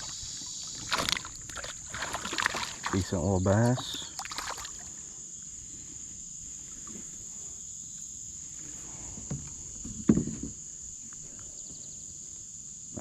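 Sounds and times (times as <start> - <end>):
insects buzzing: 0.0 - 13.0
knocks: 9.3 - 10.6.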